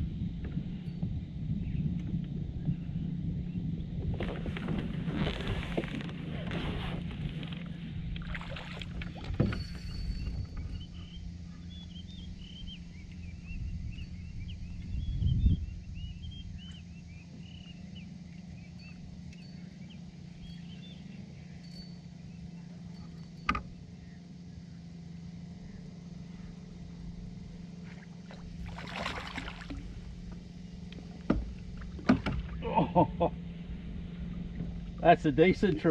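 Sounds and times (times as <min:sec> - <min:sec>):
steady low hum: 0:00.0 - 0:35.9
water splashing at kayak: 0:08.2 - 0:09.9, 0:27.8 - 0:30.4
faint high chirping: 0:09.5 - 0:25.0.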